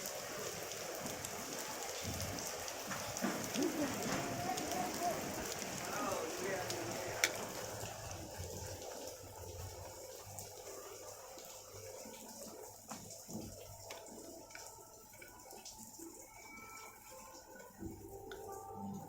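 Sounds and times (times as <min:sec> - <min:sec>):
heavy rain hissing: 0:00.0 - 0:12.6.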